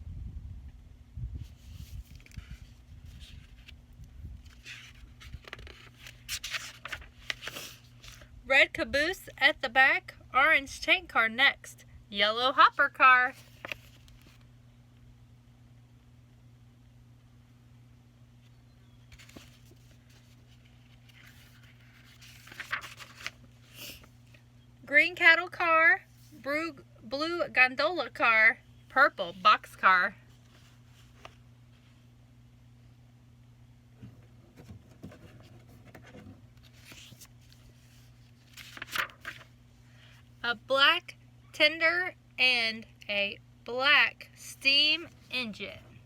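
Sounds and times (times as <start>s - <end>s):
faint steady hum: 0.0s - 46.0s
paper page rustling: 1.4s - 3.8s, 4.4s - 8.3s, 13.3s - 14.5s, 19.1s - 24.2s, 30.3s - 32.0s, 34.0s - 39.6s.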